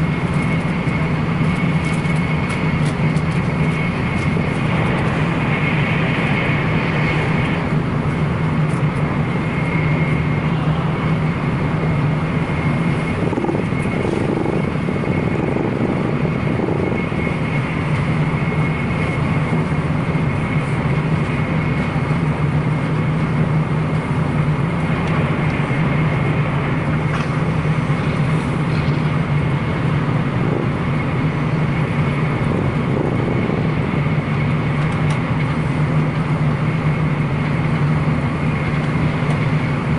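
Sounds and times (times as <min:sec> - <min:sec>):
high whine: 0:00.0 - 0:39.9
train rumble and hum: 0:00.0 - 0:39.9.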